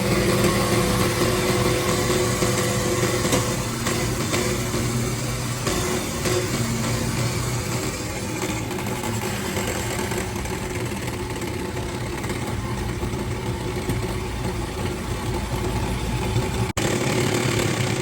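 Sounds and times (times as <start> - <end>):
diesel engine idling: 0.0 - 18.0.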